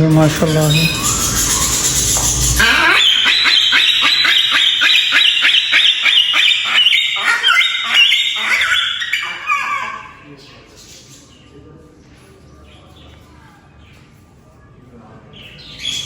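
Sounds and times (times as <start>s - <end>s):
birds honking calls: 0.0s - 10.7s.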